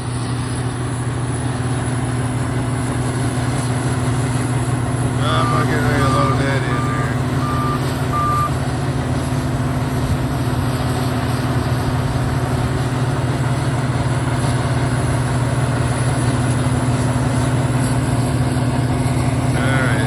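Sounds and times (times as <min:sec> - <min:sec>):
diesel engine humming: 0:00.0 - 0:20.0
reversing alarm beep: 0:05.2 - 0:08.6.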